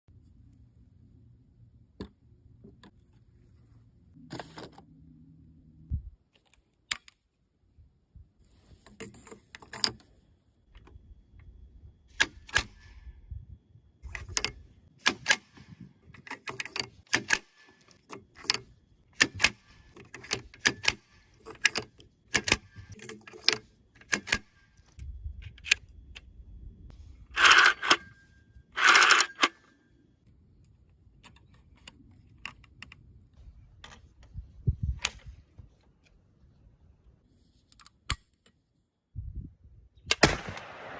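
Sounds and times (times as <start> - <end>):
sharp mechanical clicks: 12.1 - 13.1, 14.0 - 26.3, 28.8 - 29.7.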